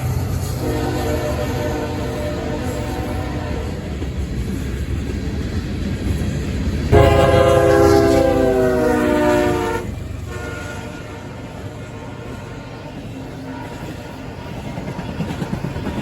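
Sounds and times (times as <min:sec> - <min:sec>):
freight train rumbling: 0:00.0 - 0:16.0
locomotive air horn: 0:00.6 - 0:03.8, 0:06.9 - 0:12.8.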